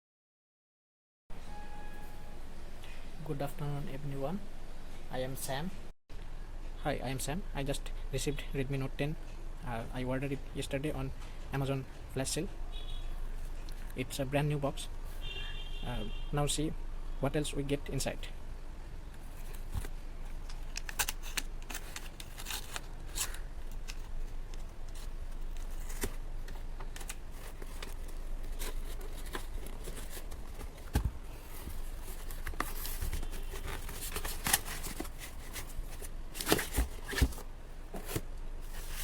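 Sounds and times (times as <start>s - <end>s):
rustling and scraping: 19.1s - 39.0s
packaging being torn open: 20.4s - 24.1s.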